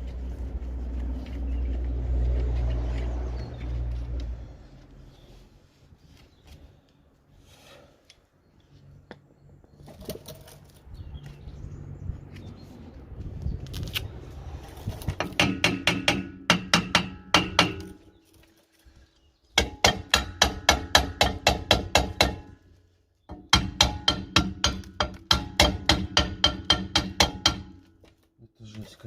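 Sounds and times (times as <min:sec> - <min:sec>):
hammer striking ringing brake drum: 0:23.3 - 0:27.9.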